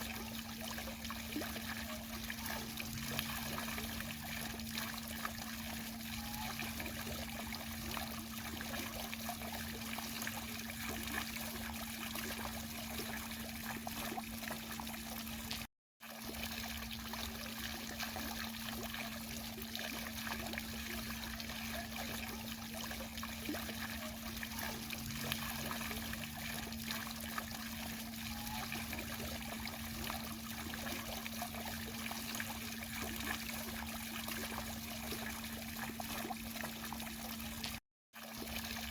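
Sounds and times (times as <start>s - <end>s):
fountain water splashing: 0.0s - 15.6s, 16.2s - 38.9s.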